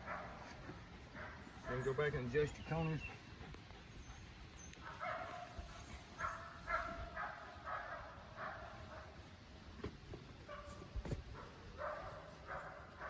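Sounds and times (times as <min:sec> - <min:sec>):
dog barking: 0:00.0 - 0:00.5, 0:04.8 - 0:09.2, 0:10.5 - 0:13.0.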